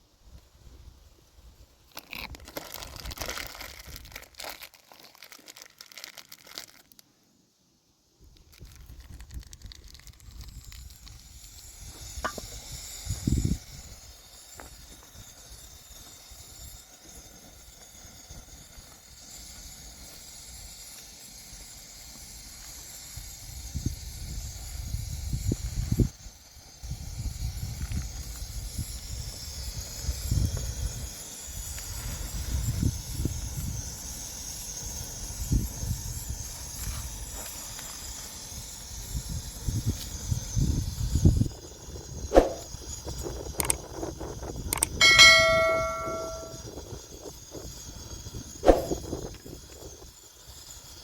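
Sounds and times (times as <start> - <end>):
rustling and crinkling handling: 1.9 - 7.1, 8.4 - 11.1
steady hiss: 9.6 - 44.0.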